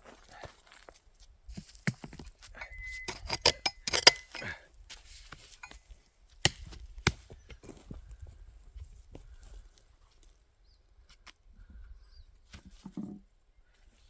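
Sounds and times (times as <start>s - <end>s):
digging tool striking rocks: 1.7s - 4.6s, 6.4s - 7.4s.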